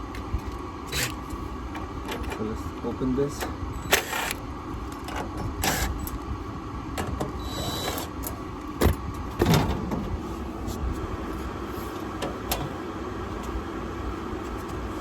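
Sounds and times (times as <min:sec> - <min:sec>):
steady mechanical hum: 0:00.0 - 0:15.0
metal panel knocks and clatters: 0:08.8 - 0:10.1.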